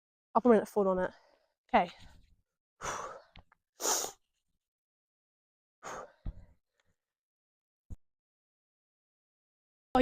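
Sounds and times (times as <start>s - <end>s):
breathy exhale: 2.8s - 4.2s, 5.8s - 6.3s.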